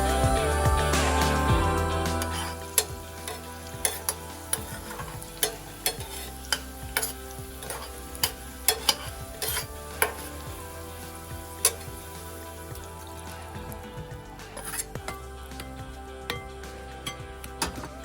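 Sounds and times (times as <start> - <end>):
faint sizzle: 0.0 - 18.0
utensil scraping and knocking a pan: 2.2 - 10.4, 14.5 - 18.0.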